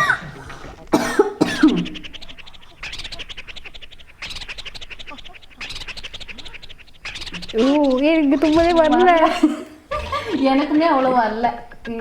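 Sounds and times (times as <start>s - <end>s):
quick rasping breaths: 0.0s - 1.0s
person coughing: 0.0s - 2.0s, 9.3s - 10.4s.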